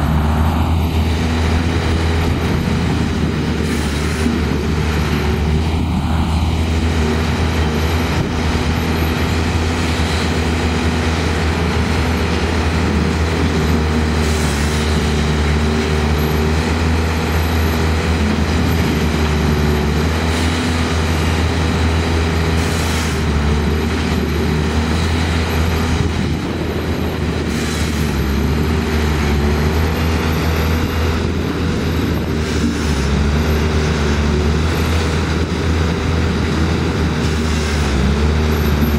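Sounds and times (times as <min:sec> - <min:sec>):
engines droning: 0:00.0 - 0:38.9.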